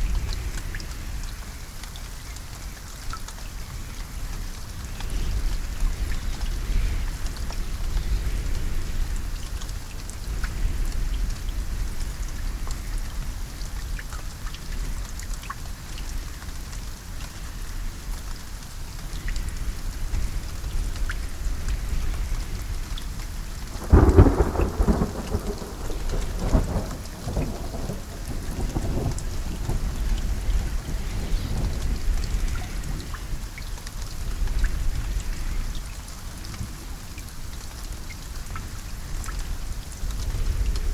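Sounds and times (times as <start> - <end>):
steady rain: 0.0 - 40.9
thunder crack and rumble: 23.6 - 33.5.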